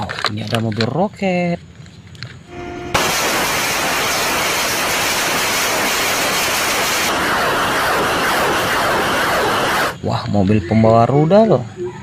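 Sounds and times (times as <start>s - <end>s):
loud steady rushing hiss: 3.0s - 10.0s.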